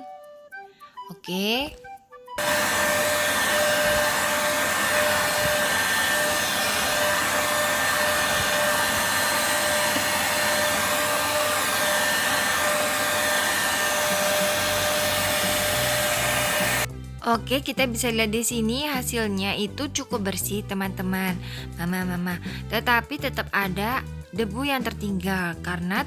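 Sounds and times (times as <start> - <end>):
vacuum cleaner running: 2.4 - 16.9.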